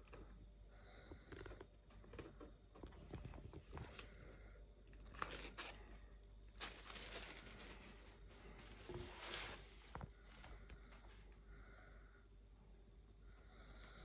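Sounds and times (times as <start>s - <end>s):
packaging crinkling and tearing: 5.0s - 5.9s, 6.6s - 8.8s
packaging rustling: 6.6s - 10.3s.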